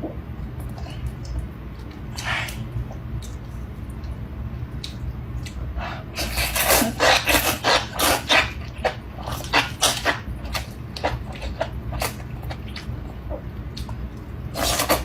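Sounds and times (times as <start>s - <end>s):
crunchy wet chewing: 0.5s - 15.0s.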